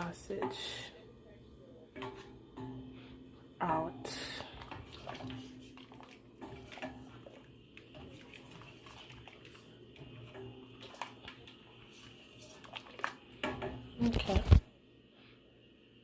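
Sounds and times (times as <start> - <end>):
water sloshing: 3.7 - 14.3.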